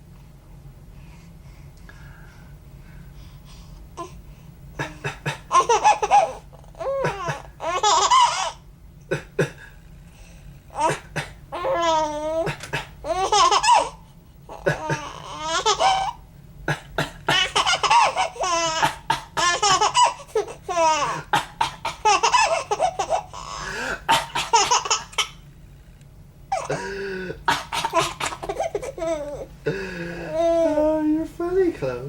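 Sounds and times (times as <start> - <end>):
baby laughing: 4.8 - 8.6, 10.7 - 16.2, 17.1 - 25.4, 26.5 - 26.8, 27.5 - 29.5.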